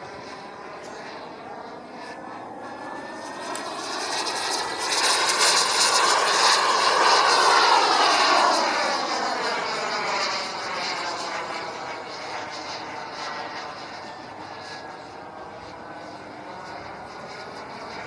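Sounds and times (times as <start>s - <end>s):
whine sweeping in pitch: 0.0s - 10.5s
model jet engine passing: 0.0s - 18.0s.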